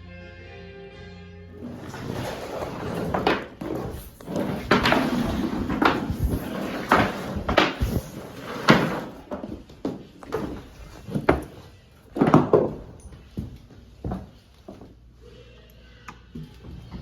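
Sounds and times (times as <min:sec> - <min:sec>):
knocks bumps and scraping: 0:01.5 - 0:14.9.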